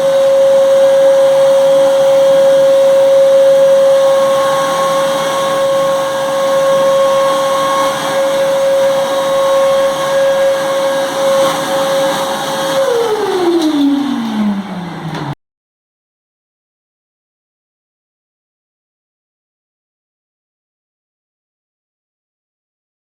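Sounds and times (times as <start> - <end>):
vacuum cleaner running: 0.0 - 15.4
vacuum motor spinning down: 0.0 - 15.4.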